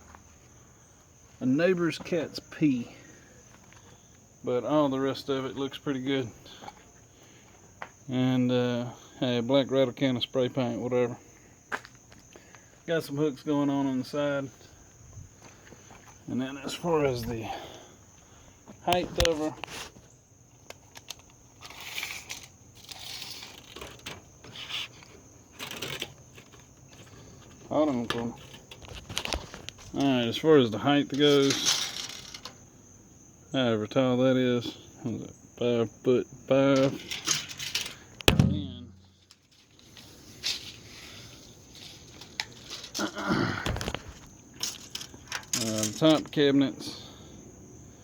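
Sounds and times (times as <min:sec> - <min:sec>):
things scraping and rattling: 0:20.7 - 0:30.3, 0:31.0 - 0:32.6, 0:36.7 - 0:46.4
rustling: 0:36.9 - 0:46.0.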